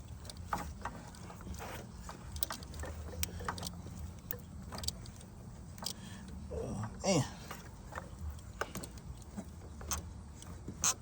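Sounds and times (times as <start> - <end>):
tools clicking and knocking: 0.0 - 6.4
low steady hum: 0.0 - 11.0.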